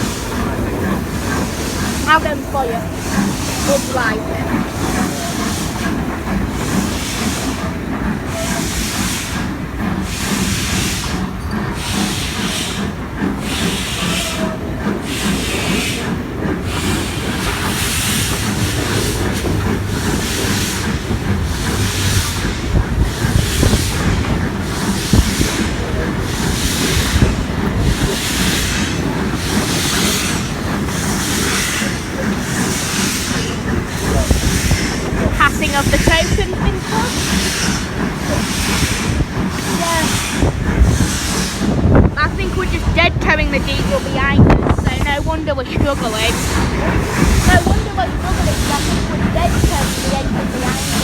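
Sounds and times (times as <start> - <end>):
steam locomotive chuffing: 0.0 - 51.0
train rumble: 0.0 - 51.0.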